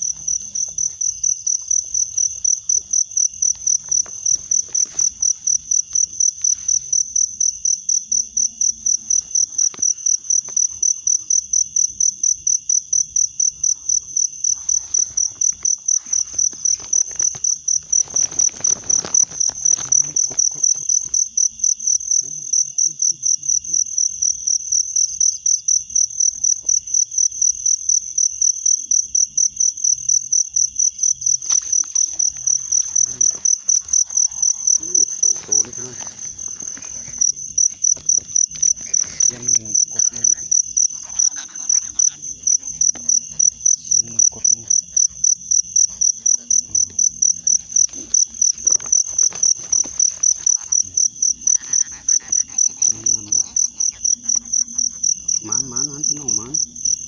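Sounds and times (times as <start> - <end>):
rustling noise: 0.0 - 7.0, 14.4 - 21.2, 31.4 - 54.5
insect chirping: 0.0 - 57.0.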